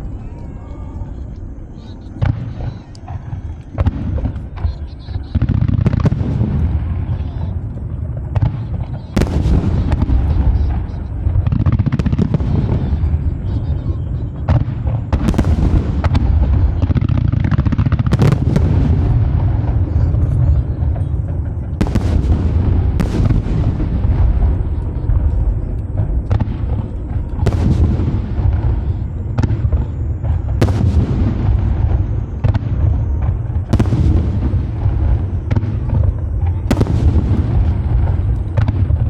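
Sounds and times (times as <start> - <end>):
fireworks bangs: 0.0 - 39.0
low rumble of booms: 2.2 - 39.0.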